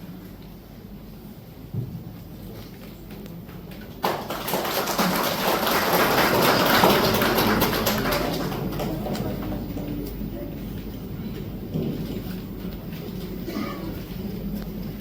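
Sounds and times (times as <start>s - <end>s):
audience applauding: 4.0s - 9.7s.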